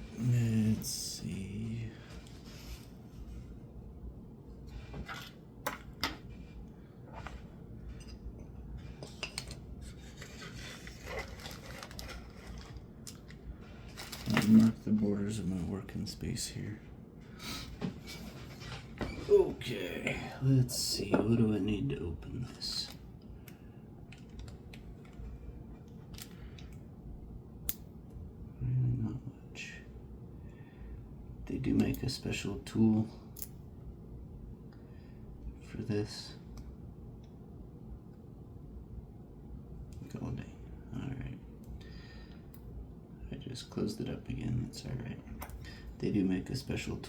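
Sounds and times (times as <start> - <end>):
soft rubbing and sliding: 0.0 - 3.8, 9.8 - 12.9.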